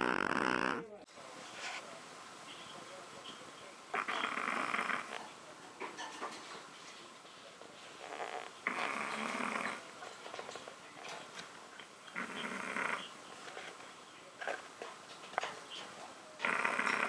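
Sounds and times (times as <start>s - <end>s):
dog snoring: 0.0s - 1.9s, 3.9s - 5.4s, 7.9s - 10.1s, 12.1s - 13.8s, 16.4s - 17.0s.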